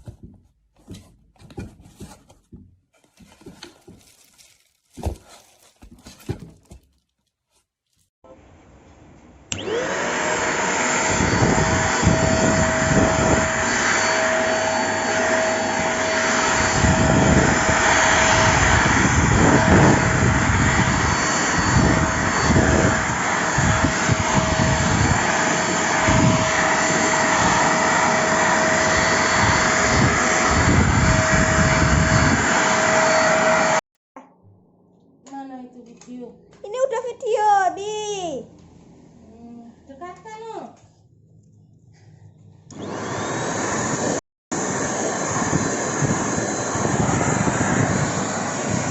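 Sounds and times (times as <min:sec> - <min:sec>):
handheld vacuum cleaner motor whine: 0:09.5 - 0:33.8, 0:42.7 - 0:48.9.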